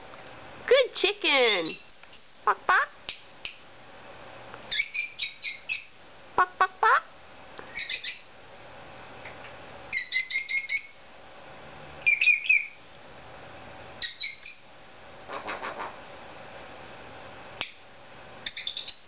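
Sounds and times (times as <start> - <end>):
parrot chirping: 1.6 - 2.9, 4.7 - 7.1, 7.7 - 8.3, 9.9 - 11.0, 12.0 - 12.8, 14.0 - 14.7, 15.3 - 15.9, 18.4 - 19.0.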